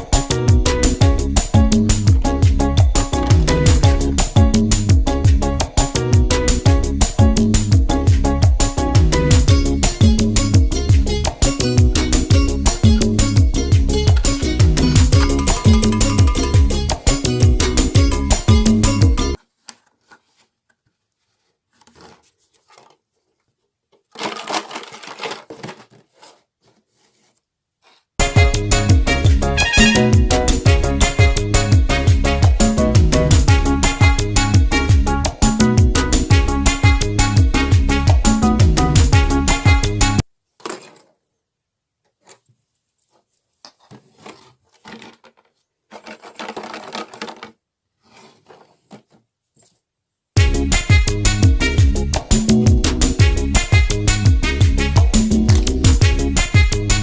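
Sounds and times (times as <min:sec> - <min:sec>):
plastic bottle crinkling: 0:19.4 - 0:28.0, 0:42.2 - 0:49.8
hard plastic toy rattling: 0:23.9 - 0:26.4, 0:43.8 - 0:49.2.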